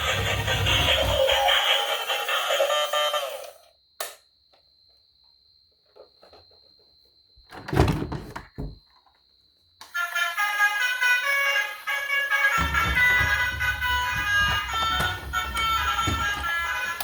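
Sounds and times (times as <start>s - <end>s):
loud thumps: 12.5s - 17.0s.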